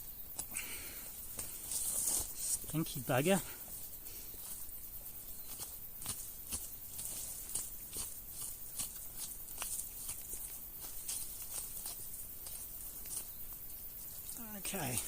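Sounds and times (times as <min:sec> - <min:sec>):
small clicks and rustles: 0:03.6 - 0:15.0.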